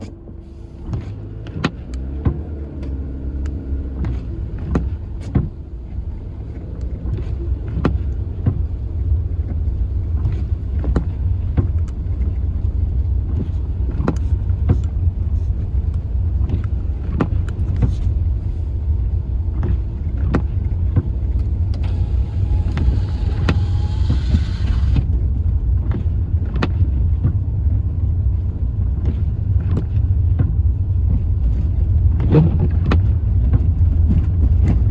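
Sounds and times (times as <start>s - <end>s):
car road rumble: 0.0s - 34.9s
hiss: 21.9s - 25.0s.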